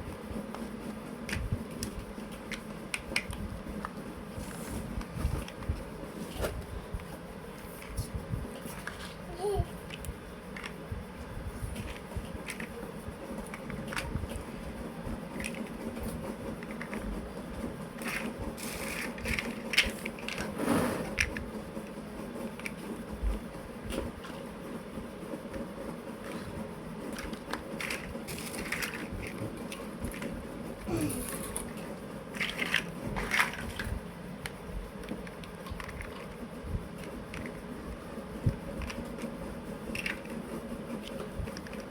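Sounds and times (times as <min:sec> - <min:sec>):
plastic blocks clicking: 0:09.8 - 0:10.8, 0:18.0 - 0:20.5, 0:39.9 - 0:40.4
plastic blocks clattering: 0:31.1 - 0:33.9.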